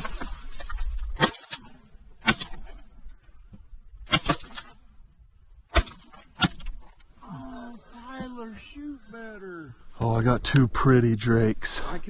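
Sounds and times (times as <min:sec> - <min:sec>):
shotgun shots: 0:02.2 - 0:02.7, 0:04.0 - 0:04.8, 0:05.7 - 0:06.8.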